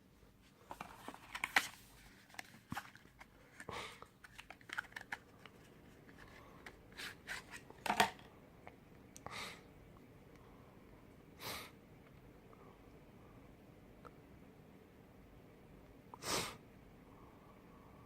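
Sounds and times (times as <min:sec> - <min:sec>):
packaging rustling scrapes: 0:00.6 - 0:07.9.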